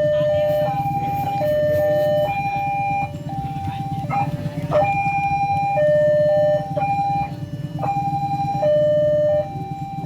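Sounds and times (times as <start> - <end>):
level crossing alarm two tones: 0.0 - 10.0
low engine rumble: 0.0 - 10.0.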